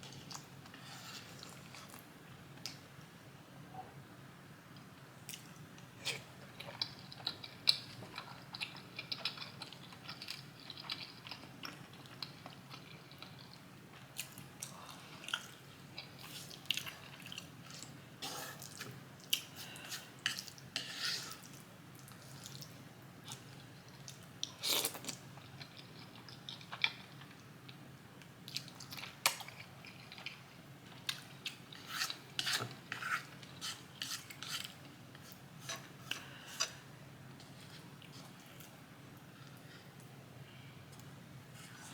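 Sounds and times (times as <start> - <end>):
person chewing food: 5.3 - 20.7, 21.3 - 27.8, 28.4 - 36.8.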